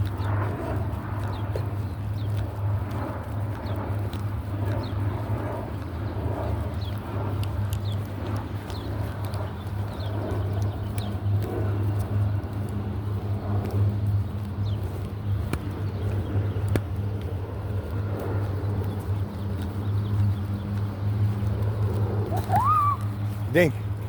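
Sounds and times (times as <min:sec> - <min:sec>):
engine humming: 0:11.8 - 0:24.0.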